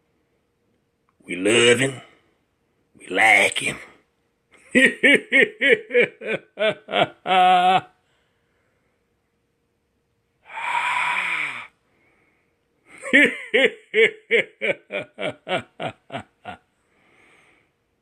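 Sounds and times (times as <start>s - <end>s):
man laughing in short bursts: 4.6s - 7.9s, 12.9s - 16.6s
man wheezing gasp: 10.5s - 11.8s.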